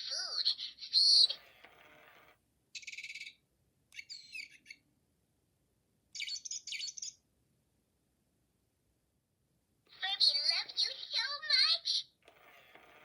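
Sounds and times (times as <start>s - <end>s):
bird chirping: 2.7s - 4.9s, 6.1s - 7.3s.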